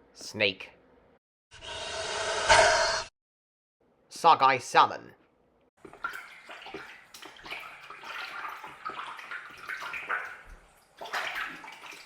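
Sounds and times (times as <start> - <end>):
fish splashing in water: 5.8 - 12.0.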